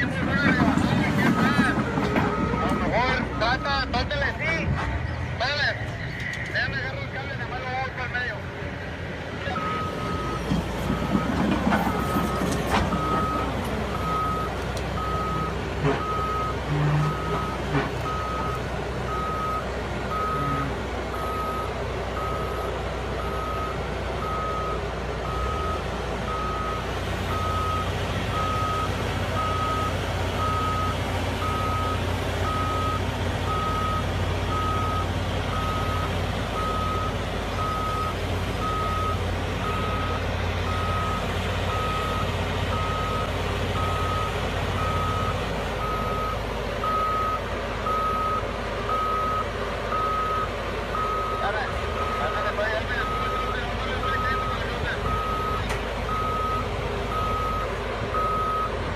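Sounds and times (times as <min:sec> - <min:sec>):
engine rumble: 0:00.0 - 0:58.9
reversing alarm beeping: 0:01.2 - 0:04.2, 0:09.5 - 0:58.8.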